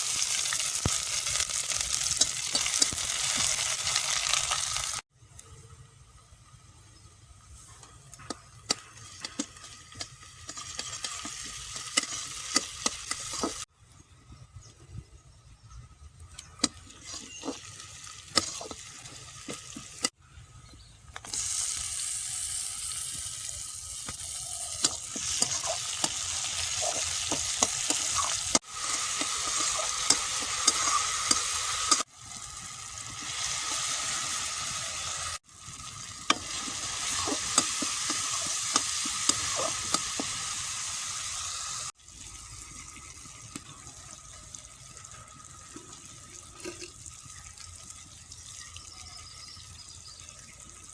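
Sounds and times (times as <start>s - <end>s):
food sizzling in a pan: 0.0s - 5.0s, 8.7s - 13.7s, 16.8s - 20.2s, 21.3s - 47.4s.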